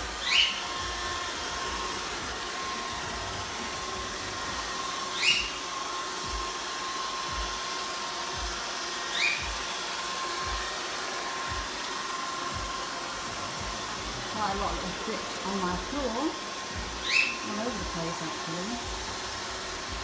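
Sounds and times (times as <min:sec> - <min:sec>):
robot vacuum cleaner whirring: 0:00.0 - 0:20.0.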